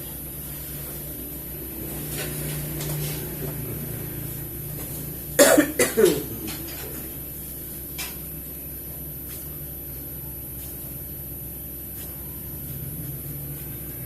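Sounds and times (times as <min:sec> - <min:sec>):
man coughing: 0:05.4 - 0:06.8.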